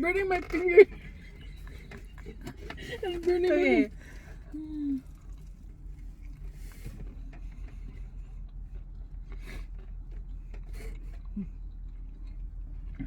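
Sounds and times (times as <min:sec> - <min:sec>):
steady low hum: 0:00.0 - 0:13.0
chewing food: 0:03.9 - 0:13.0.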